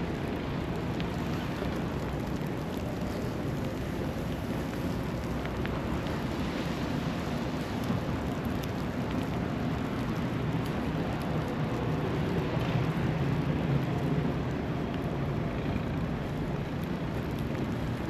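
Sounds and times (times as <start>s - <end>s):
traffic rumble: 0.0s - 18.0s
hiss of tyres on wet road: 0.3s - 14.4s.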